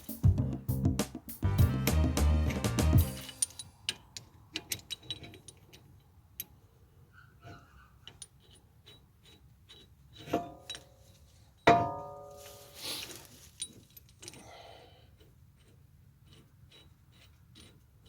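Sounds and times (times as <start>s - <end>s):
ringing metal clanks: 3.1s - 6.0s, 11.6s - 12.4s
metallic clicks of tools: 3.1s - 6.6s, 8.0s - 11.0s, 13.6s - 14.5s.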